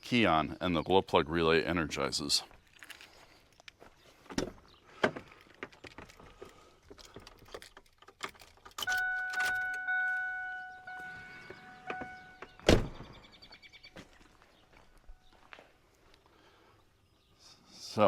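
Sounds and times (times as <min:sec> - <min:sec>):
keys and ignition clicks: 0:02.7 - 0:03.8, 0:05.3 - 0:13.2
electronic warning chime: 0:08.8 - 0:12.6
loud thump: 0:12.6 - 0:13.2.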